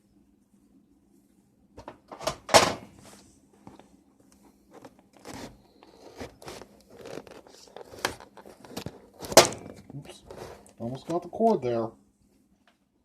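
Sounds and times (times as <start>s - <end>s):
cardboard box scraping and knocking: 5.2s - 10.6s.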